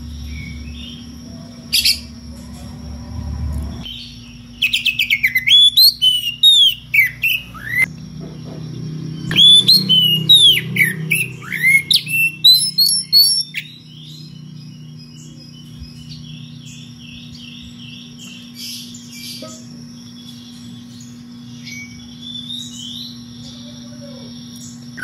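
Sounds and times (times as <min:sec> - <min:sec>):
low hum: 0:00.0 - 0:05.5
songbird whistling song: 0:03.8 - 0:25.0.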